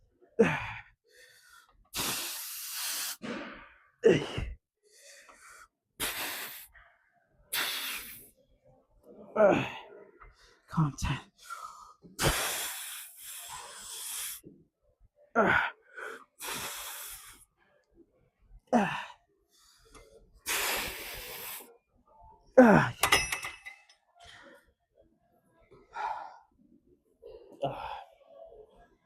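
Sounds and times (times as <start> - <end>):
man groaning: 4.0 - 4.6, 22.6 - 23.0
man gasping breaths: 15.4 - 17.4.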